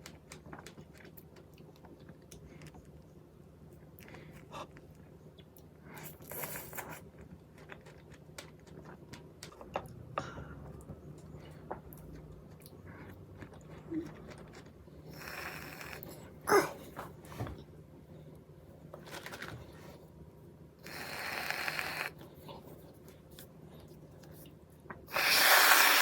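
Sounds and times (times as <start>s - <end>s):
chewing and wet mouth noises: 3.8s - 16.2s.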